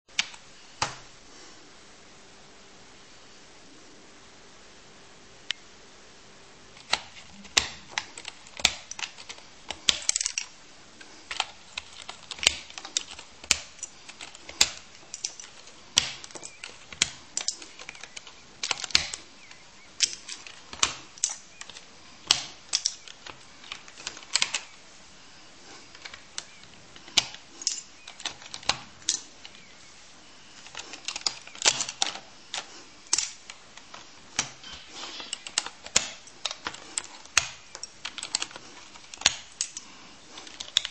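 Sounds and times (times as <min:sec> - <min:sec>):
keyboard keys clicking: 0:06.8 - 0:24.8, 0:25.8 - 0:29.7, 0:30.5 - 0:40.9.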